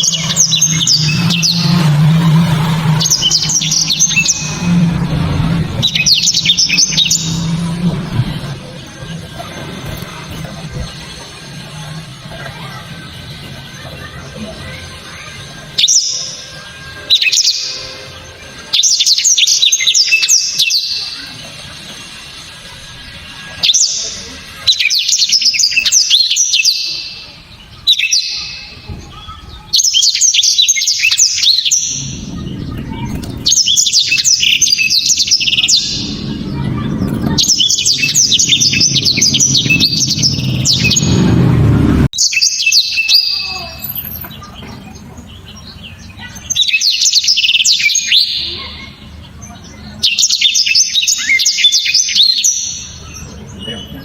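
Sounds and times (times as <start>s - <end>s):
low rumble: 0.0s - 14.6s, 31.5s - 42.1s
canary singing: 0.0s - 54.0s.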